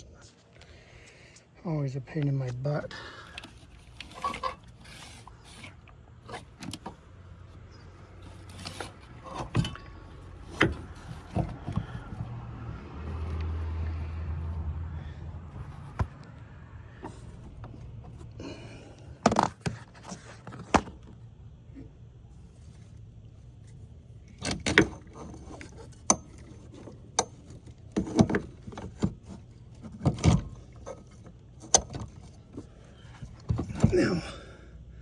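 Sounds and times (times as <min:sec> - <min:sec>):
metal parts and tools clanking: 0:03.2 - 0:07.0, 0:07.7 - 0:12.2.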